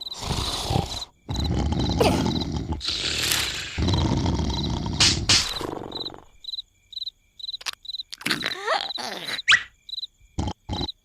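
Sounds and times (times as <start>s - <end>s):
crickets chirping: 0.0s - 11.0s
squeaky gliding cartoon sounds: 7.6s - 9.8s.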